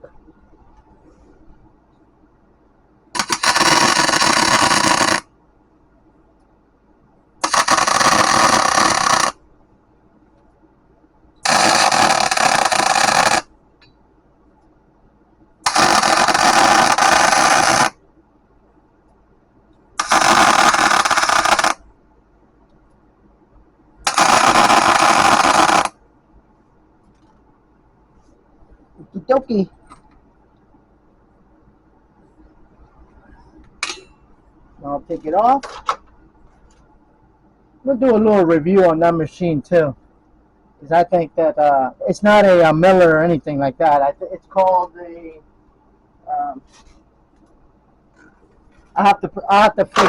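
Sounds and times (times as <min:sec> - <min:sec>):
arc welder crackling: 0:03.2 - 0:05.3, 0:07.4 - 0:09.4, 0:11.4 - 0:13.5, 0:15.6 - 0:18.0, 0:20.0 - 0:21.8, 0:24.0 - 0:26.0.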